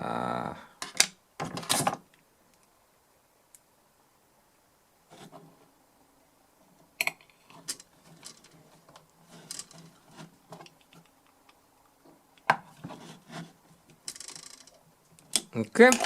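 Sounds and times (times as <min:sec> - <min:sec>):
clicks of small parts handled: 0:14.1 - 0:16.0.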